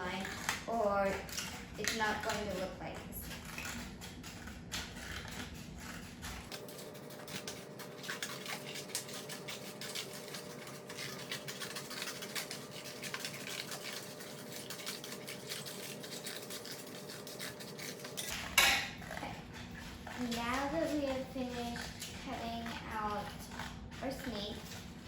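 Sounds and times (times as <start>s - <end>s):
scissors cutting paper plate: 0.0s - 25.0s.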